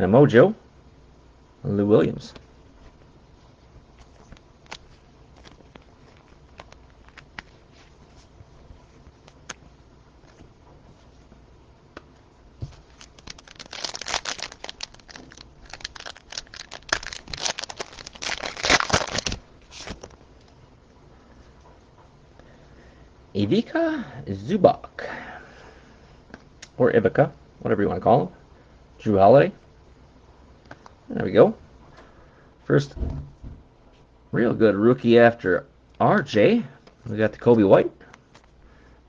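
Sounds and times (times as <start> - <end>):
plastic crinkling: 3.9 - 9.6, 12.6 - 20.5.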